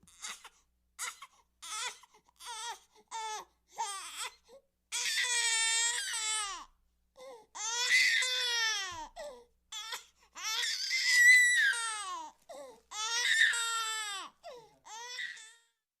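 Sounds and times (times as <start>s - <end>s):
baby crying: 0.1s - 15.7s.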